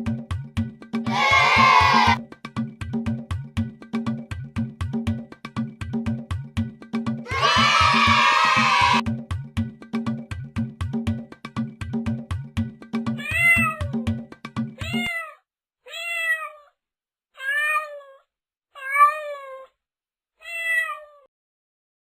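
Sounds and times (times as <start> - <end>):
rhythmic music with steady beat: 0.0 - 15.0
cat meowing: 13.2 - 14.0, 14.8 - 16.8, 17.4 - 19.7, 20.4 - 21.3.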